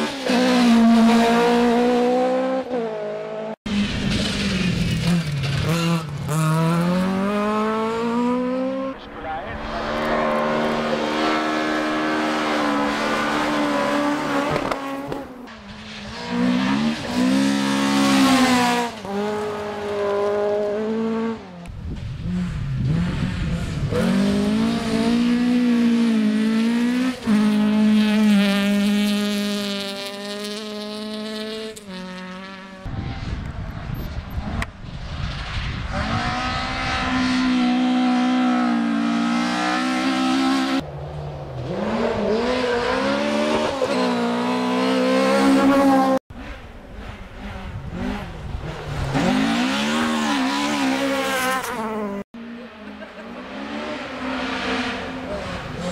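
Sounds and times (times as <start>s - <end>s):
rally car engines revving hard: 0.0s - 34.9s, 35.6s - 55.9s.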